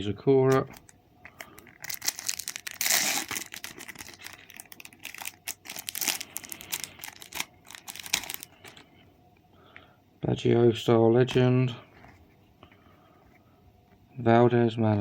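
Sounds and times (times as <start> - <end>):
card packet wrapper crinkling: 0.5 - 8.8.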